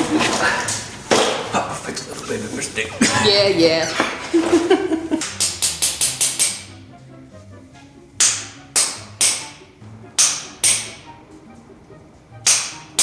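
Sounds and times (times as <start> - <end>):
snare hits: 1.1 - 1.5, 5.2 - 6.8, 8.2 - 11.2, 12.4 - 13.0.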